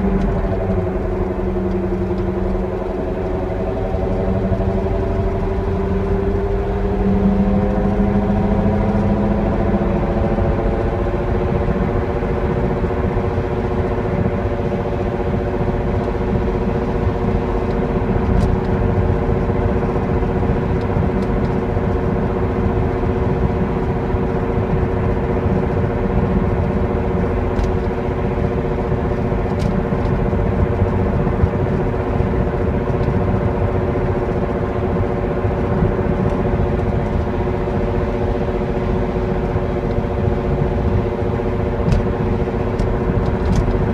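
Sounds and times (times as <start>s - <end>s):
low road rumble: 0.0s - 43.9s
whining drone from car rear: 0.0s - 43.9s.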